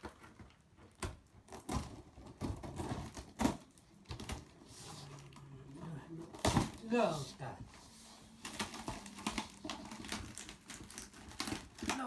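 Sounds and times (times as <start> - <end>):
knife cutting box packaging: 8.4 - 12.0.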